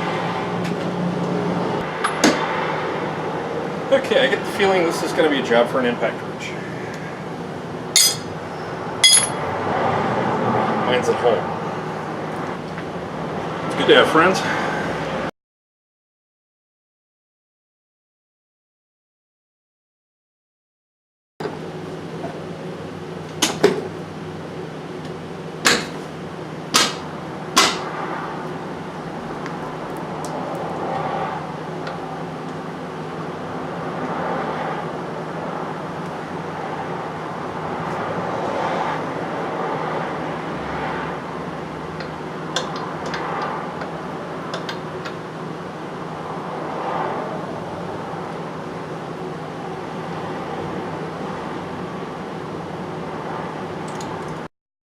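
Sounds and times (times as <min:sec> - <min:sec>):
steady mechanical hum: 0:00.0 - 0:15.3, 0:21.4 - 0:54.5
sharp metallic knocks: 0:08.0 - 0:08.3, 0:09.0 - 0:09.4, 0:26.7 - 0:27.9.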